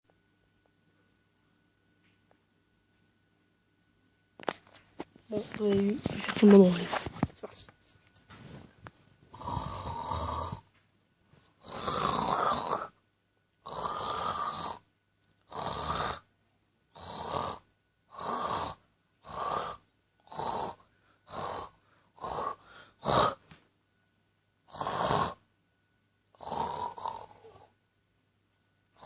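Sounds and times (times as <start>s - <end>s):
person fake snoring: 9.3s - 10.7s, 11.6s - 13.0s, 13.6s - 16.3s, 16.9s - 23.5s, 24.7s - 25.4s, 26.3s - 27.7s.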